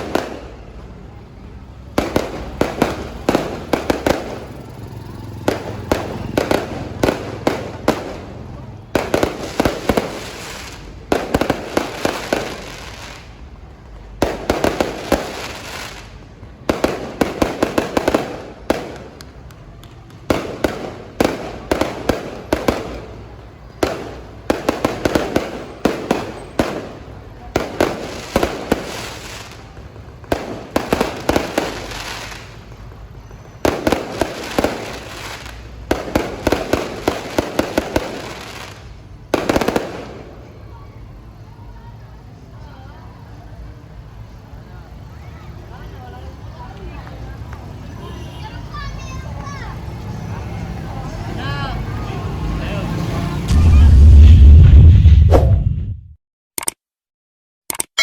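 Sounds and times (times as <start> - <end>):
fireworks bangs: 0.0 - 40.6, 53.3 - 56.1
fireworks crackling: 0.0 - 42.6, 43.2 - 56.1.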